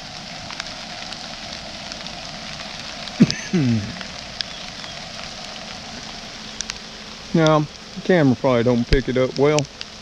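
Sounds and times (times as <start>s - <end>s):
rain drop clicks: 0.0s - 10.0s
steady rain: 0.0s - 10.0s
low voice-like sounds: 3.2s - 4.1s.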